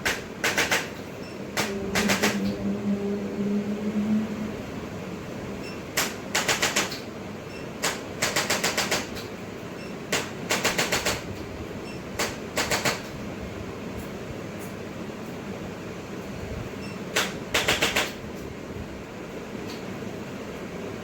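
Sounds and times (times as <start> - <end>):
sharp mechanical clicking: 0.0 - 2.5, 5.6 - 13.2, 17.1 - 18.2
background hum: 0.0 - 9.9.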